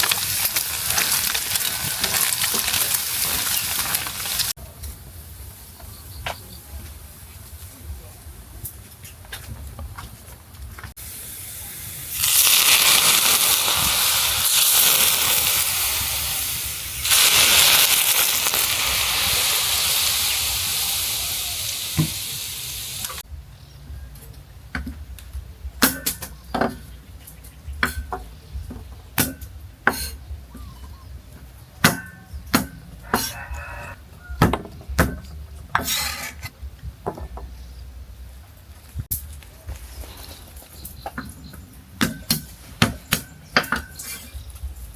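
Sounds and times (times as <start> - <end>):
food sizzling in a hot pan: 0.0 - 4.6, 11.0 - 23.2.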